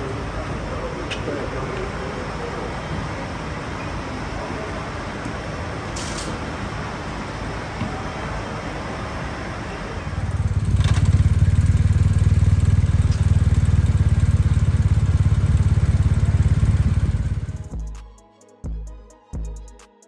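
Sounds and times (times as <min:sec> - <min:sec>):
loud engine rumbling: 0:08.3 - 0:17.8.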